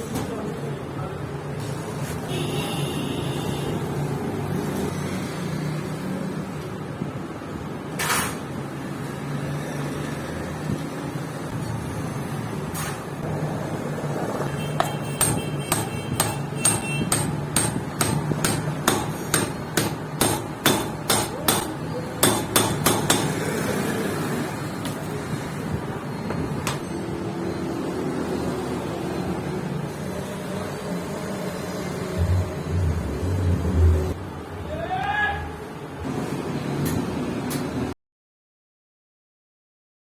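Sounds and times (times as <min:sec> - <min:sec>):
steady machine hum: 0:14.5 - 0:23.5
hammer blows on metal: 0:14.8 - 0:23.6.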